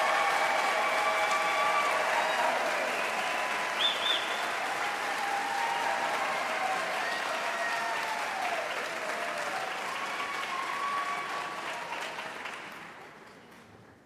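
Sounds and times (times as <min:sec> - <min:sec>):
people cheering: 0:00.0 - 0:12.8
audience applause: 0:00.0 - 0:13.6.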